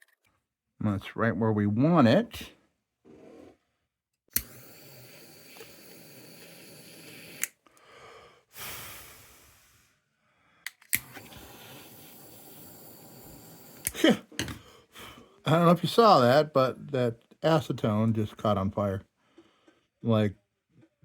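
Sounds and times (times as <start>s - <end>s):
torch sharp click: 4.3s - 4.8s, 7.2s - 7.6s, 13.7s - 14.0s
gas torch flame hissing: 4.3s - 7.6s, 8.6s - 9.8s, 10.9s - 14.2s.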